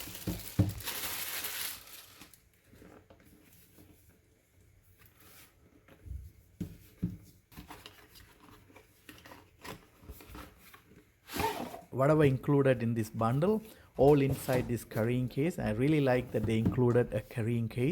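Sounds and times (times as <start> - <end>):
packaging tearing and crinkling: 0.0 - 2.5.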